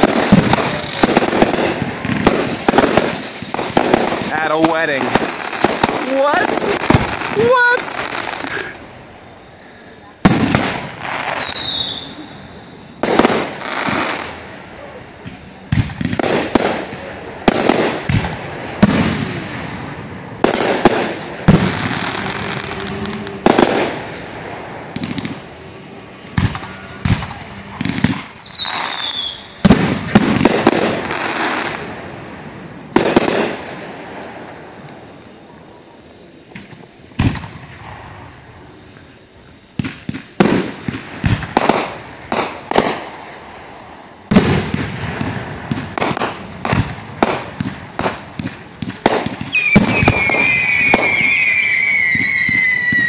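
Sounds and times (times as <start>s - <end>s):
falling firework whistle: 0.0s - 32.0s, 44.1s - 53.0s
firework crackle: 0.0s - 53.0s
firework shell bursts: 44.2s - 53.0s.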